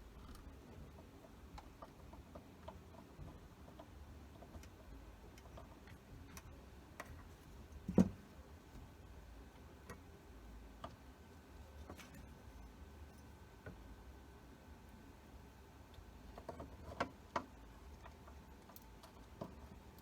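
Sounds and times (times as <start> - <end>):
low steady hum: 0.0 - 20.0
light ticks and taps of tools: 9.8 - 10.0, 10.8 - 11.0, 15.9 - 20.0.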